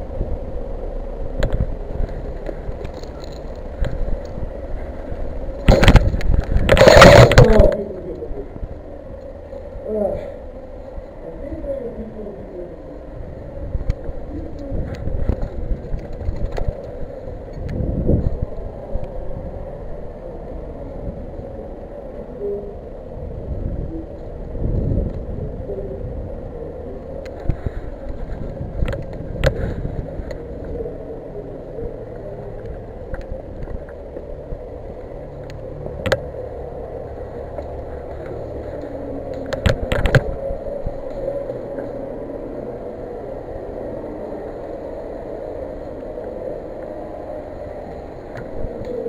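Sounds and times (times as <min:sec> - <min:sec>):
steady rumbling noise: 0:00.0 - 0:49.0
sharp cracks: 0:05.6 - 0:08.3.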